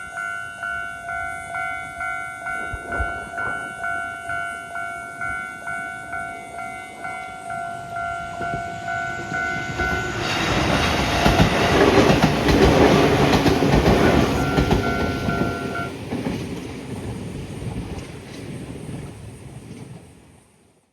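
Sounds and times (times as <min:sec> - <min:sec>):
level crossing alarm bell: 0:00.0 - 0:10.8, 0:14.0 - 0:15.9
train passing loudly: 0:00.0 - 0:20.0.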